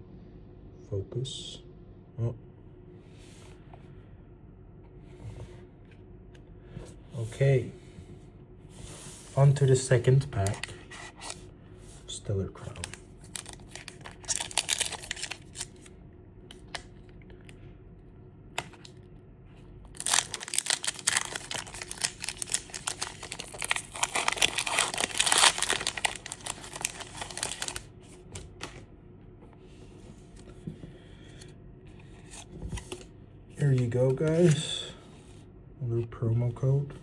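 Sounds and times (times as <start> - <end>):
foil wrapper tearing and crinkling: 12.8 - 15.9, 19.9 - 27.9.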